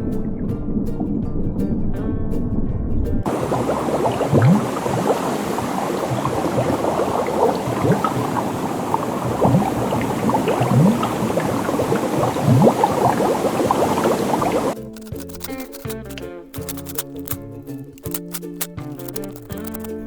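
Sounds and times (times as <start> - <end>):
water bubbling and gurgling: 3.2 - 14.8
deep low gulps: 3.3 - 14.8.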